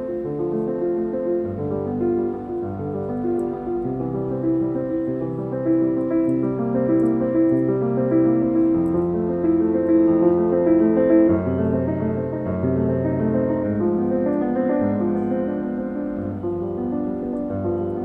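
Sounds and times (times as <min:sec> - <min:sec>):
slow piano chords: 0:00.0 - 0:18.0.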